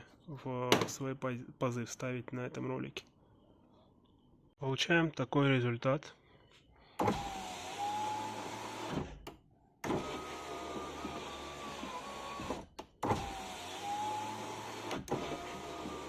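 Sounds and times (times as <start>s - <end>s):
electric window motor whine: 7.0s - 16.0s.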